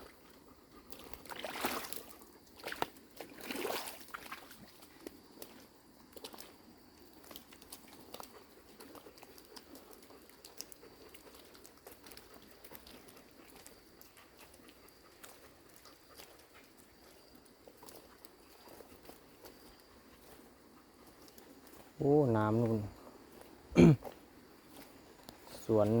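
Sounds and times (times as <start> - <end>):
small clicks and rustles: 4.7 - 20.4.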